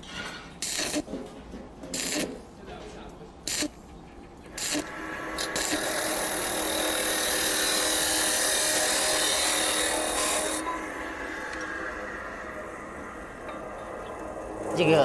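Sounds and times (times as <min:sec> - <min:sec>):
cutting disc grinding steel: 0:00.5 - 0:02.4, 0:04.5 - 0:15.0
motor whine: 0:04.6 - 0:15.0.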